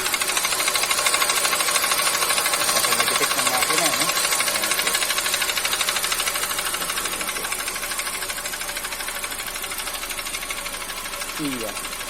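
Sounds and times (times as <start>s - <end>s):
engine metallic knocking: 0.0s - 12.0s.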